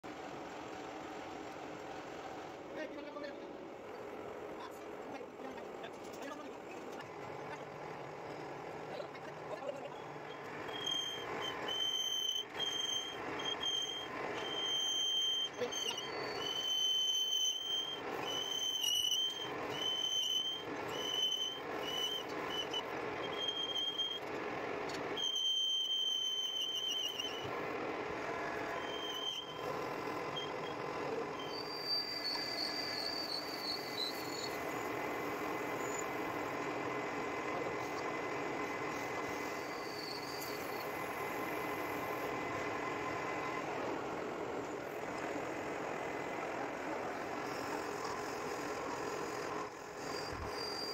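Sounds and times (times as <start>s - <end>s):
lathe cutting tool squealing: 4.9s - 50.9s
lathe running: 5.4s - 50.7s.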